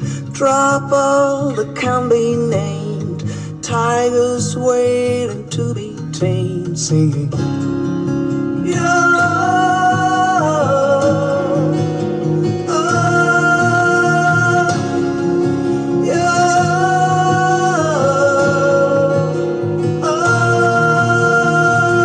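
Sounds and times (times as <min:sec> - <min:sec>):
instrumental backing music: 0:00.9 - 0:22.0
person singing long sliding notes: 0:08.6 - 0:22.0.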